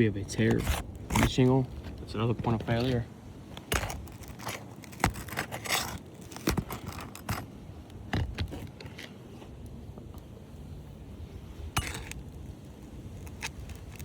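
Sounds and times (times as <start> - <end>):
metal tool scraping shingles: 0.3 - 3.0, 3.6 - 7.5, 11.8 - 12.2.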